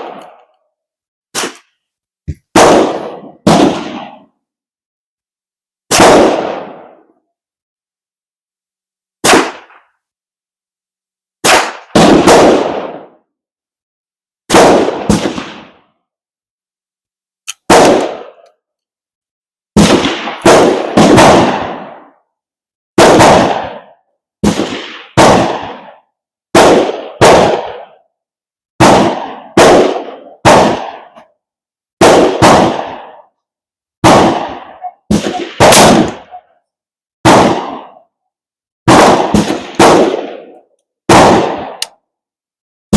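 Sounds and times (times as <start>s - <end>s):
echoing gunshots: 0.0s - 0.3s, 1.4s - 1.7s, 2.5s - 4.3s, 5.9s - 7.1s, 9.2s - 9.9s, 11.4s - 13.2s, 14.5s - 15.9s, 17.7s - 18.4s, 19.8s - 22.2s, 23.0s - 28.0s, 28.8s - 31.2s, 32.0s - 33.3s, 34.0s - 36.5s, 37.2s - 38.0s, 38.9s - 41.9s.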